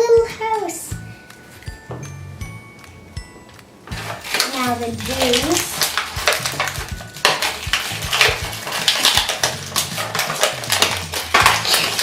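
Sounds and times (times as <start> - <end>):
plastic packaging crinkling: 3.8 - 12.0
plastic toy pieces clicking: 4.0 - 12.0.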